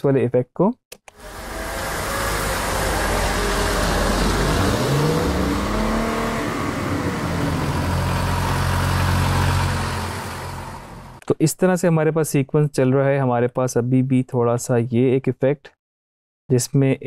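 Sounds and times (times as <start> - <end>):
car engine drone: 1.1 - 11.2.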